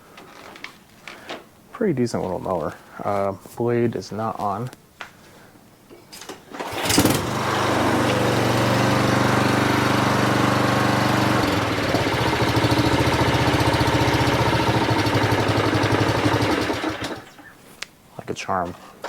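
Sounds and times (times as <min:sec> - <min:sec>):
lawn mower engine running: 0:06.5 - 0:17.5.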